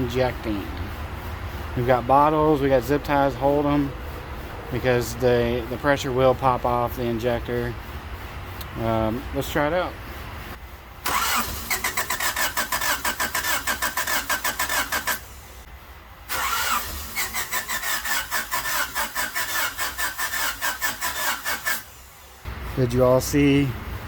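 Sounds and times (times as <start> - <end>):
starter cranking engine: 11.0 - 15.7, 16.3 - 22.2.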